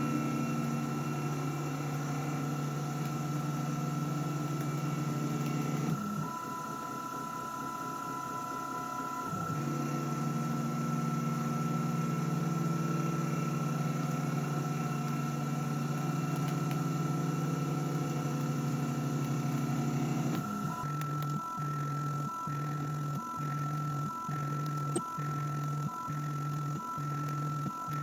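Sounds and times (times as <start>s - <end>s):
milling machine spindle whine: 0.0s - 28.0s
low motor hum: 11.4s - 28.0s.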